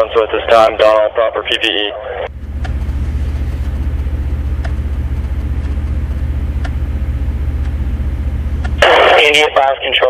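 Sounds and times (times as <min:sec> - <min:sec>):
engine running with throb: 0:02.3 - 0:09.4.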